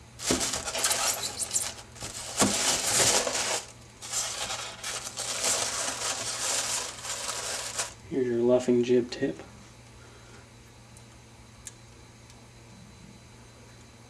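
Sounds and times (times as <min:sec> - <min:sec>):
packaging rustling and crinkling: 0:00.2 - 0:08.0.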